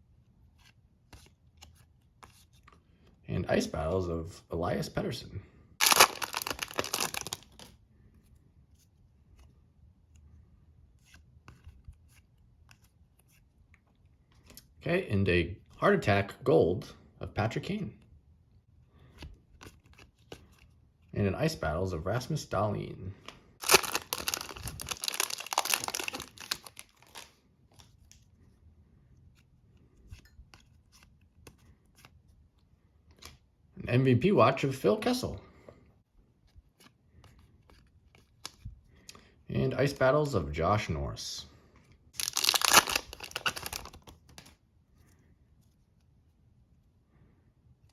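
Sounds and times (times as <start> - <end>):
wrapper tearing and crinkling: 5.8 - 7.7, 23.6 - 27.3, 42.2 - 44.1
cards scraping rustle: 5.8 - 14.7, 19.0 - 20.8, 23.6 - 28.4, 42.2 - 46.1.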